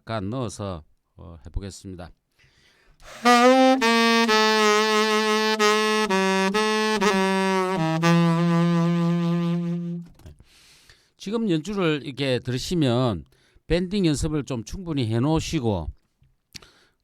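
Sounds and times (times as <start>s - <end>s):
saxophone ballad: 3.0s - 10.2s.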